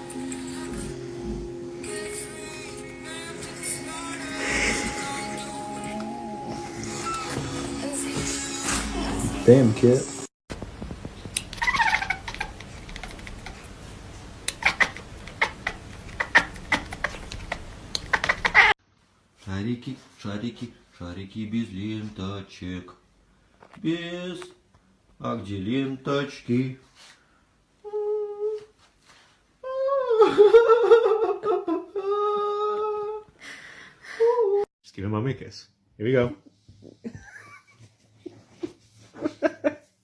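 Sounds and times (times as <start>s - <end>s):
person humming: 0.0s - 9.5s, 27.8s - 28.7s.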